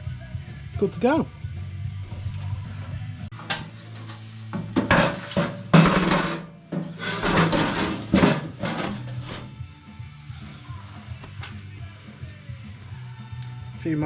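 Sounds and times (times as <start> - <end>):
metal parts clattering and scraping: 3.3 - 9.6.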